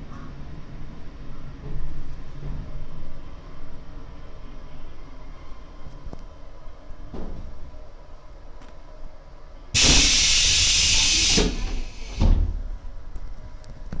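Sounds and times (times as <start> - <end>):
train doors air hiss: 9.8 - 12.7.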